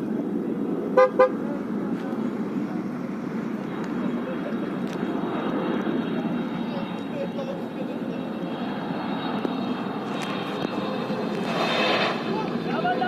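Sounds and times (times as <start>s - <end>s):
jet engines rumbling: 0.0s - 13.0s
vehicle horn toots: 1.0s - 1.4s.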